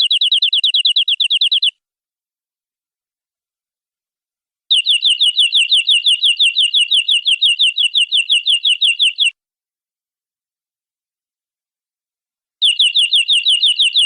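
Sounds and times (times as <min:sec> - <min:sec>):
canary trilling: 0:00.0 - 0:01.7, 0:04.7 - 0:09.3, 0:12.6 - 0:14.0.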